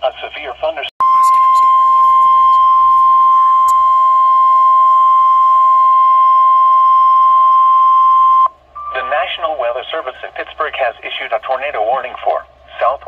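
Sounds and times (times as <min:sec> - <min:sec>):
steady pure alarm tone: 0:01.0 - 0:09.4.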